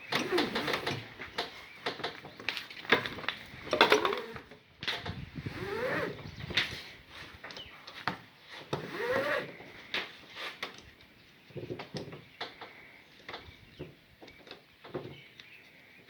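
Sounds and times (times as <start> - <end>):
strap webbing sliding: 8.5 - 10.8.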